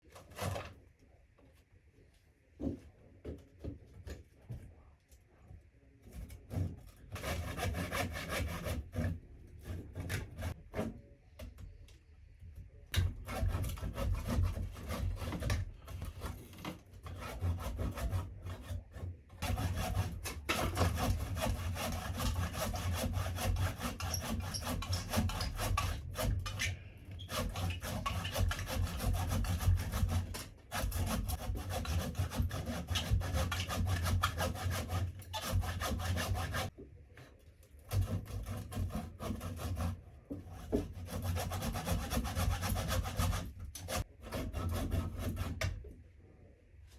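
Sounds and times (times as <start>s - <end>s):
handsaw cutting wood: 0.1s - 0.8s, 6.2s - 11.0s, 13.1s - 36.7s, 37.9s - 45.6s.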